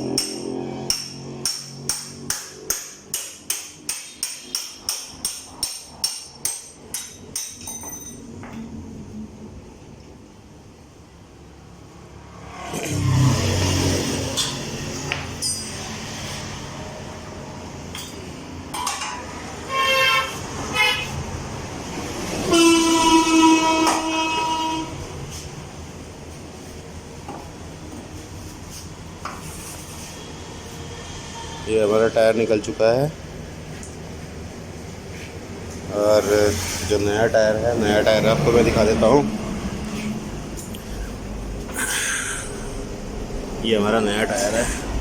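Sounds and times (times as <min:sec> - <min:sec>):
hammer striking metal: 0:00.0 - 0:08.3, 0:14.3 - 0:16.0
vehicle horns honking: 0:19.6 - 0:21.3, 0:22.3 - 0:25.3.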